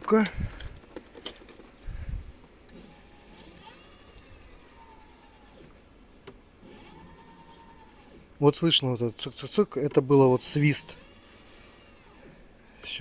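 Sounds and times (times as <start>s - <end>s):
wheel brake squeaking: 10.0s - 13.0s.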